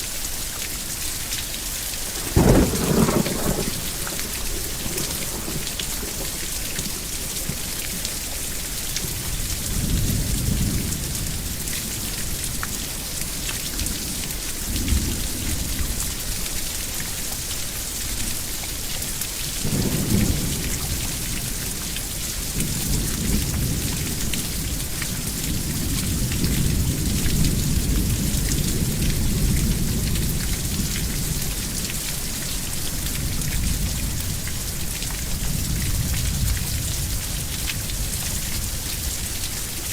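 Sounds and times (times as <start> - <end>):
heavy rain hissing: 0.0 - 39.9
thunder rumbling: 2.0 - 11.0, 19.6 - 31.8.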